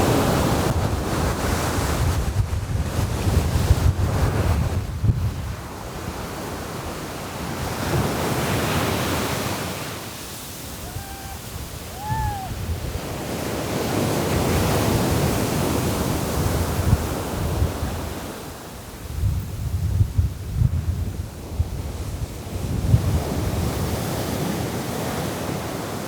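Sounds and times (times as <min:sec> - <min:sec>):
wind buffeting microphone: 0:00.0 - 0:09.2, 0:10.2 - 0:25.6
waves breaking on shore: 0:00.0 - 0:26.0
short high calls: 0:10.6 - 0:12.6.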